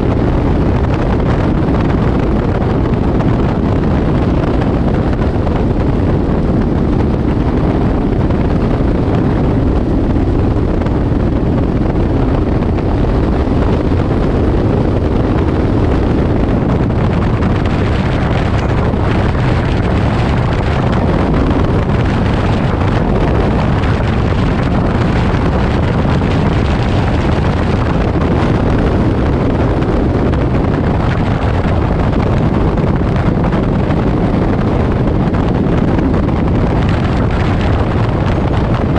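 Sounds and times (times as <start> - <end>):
light aircraft engine drone: 0.0 - 38.9
wind noise on microphone: 0.0 - 38.9.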